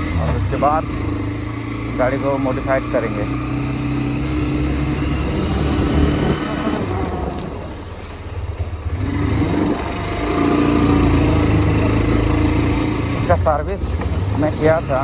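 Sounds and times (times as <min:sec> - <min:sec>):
motorcycle engine running: 0:00.0 - 0:15.0.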